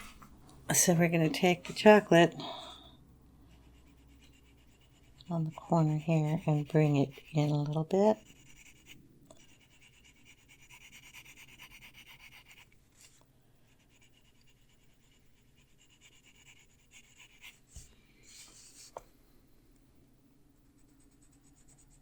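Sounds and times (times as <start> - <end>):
pencil scratching on paper: 3.4 - 19.0, 20.8 - 22.0.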